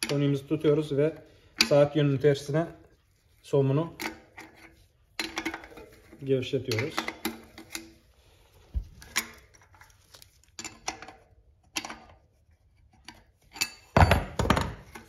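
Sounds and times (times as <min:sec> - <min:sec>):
metal wrenches and nut clinking: 0:03.7 - 0:08.0, 0:09.0 - 0:12.2, 0:13.0 - 0:15.0.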